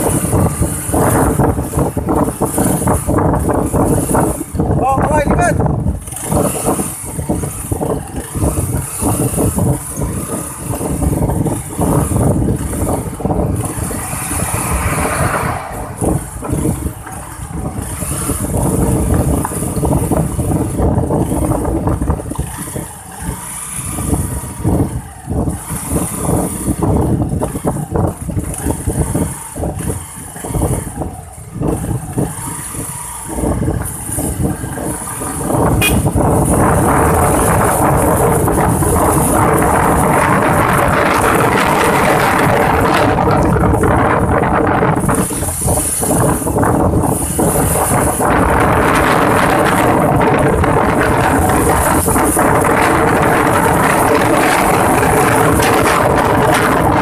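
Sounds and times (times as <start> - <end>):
vehicle engine and road noise: 0.0 - 57.0.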